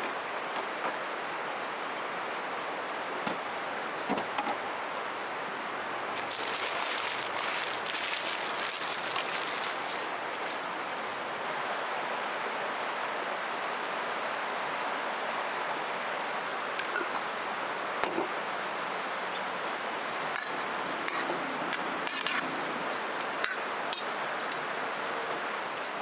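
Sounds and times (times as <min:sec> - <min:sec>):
river flowing: 0:00.1 - 0:26.0
campfire crackling: 0:05.4 - 0:11.4, 0:16.4 - 0:26.0.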